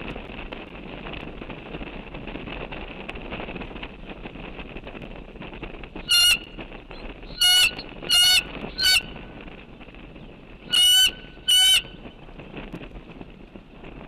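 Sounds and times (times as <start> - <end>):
loud short bird calls: 7.3 - 9.0, 10.7 - 11.9.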